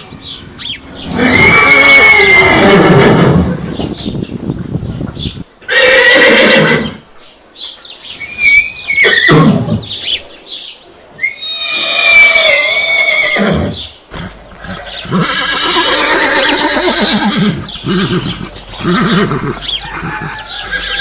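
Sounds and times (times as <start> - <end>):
horse neighing: 0.0 - 4.0, 5.6 - 7.0, 8.2 - 9.8, 11.2 - 21.0.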